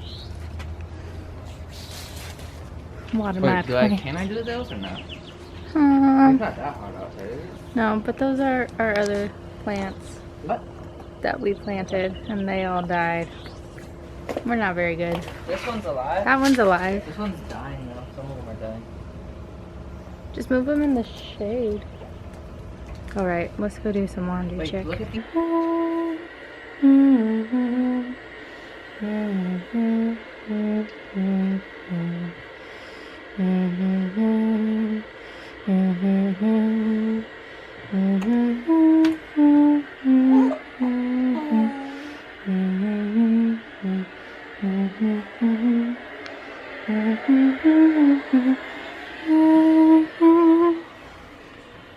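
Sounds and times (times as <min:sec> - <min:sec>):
person humming a tune: 0:05.7 - 0:06.5, 0:25.2 - 0:28.2, 0:29.0 - 0:32.4, 0:33.4 - 0:46.0, 0:46.9 - 0:48.6, 0:49.2 - 0:50.8.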